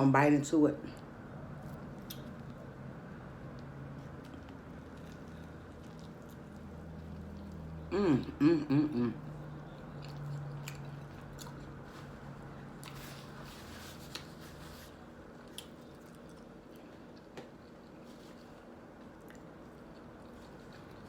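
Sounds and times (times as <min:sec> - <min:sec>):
close chewing mouth sounds: 0:01.6 - 0:08.4, 0:09.1 - 0:12.0, 0:15.4 - 0:21.0.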